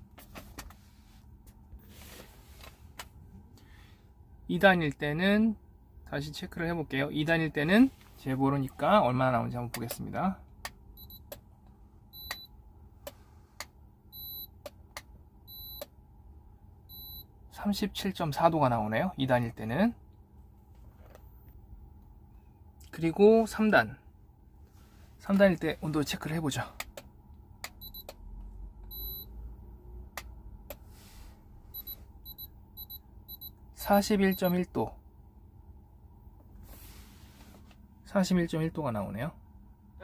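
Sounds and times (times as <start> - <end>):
digital thermometer beeping: 11.0 - 11.2, 12.2 - 12.5, 14.2 - 14.5, 15.5 - 15.9, 16.9 - 17.2, 27.8 - 28.1, 28.9 - 29.3, 31.7 - 33.6
thermometer clicking: 26.8 - 28.2.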